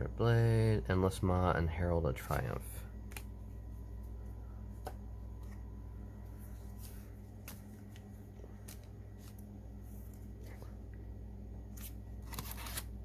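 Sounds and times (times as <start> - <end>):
steady low hum: 0.0 - 13.0
trading cards clicking and sliding: 6.6 - 10.6, 11.7 - 13.0.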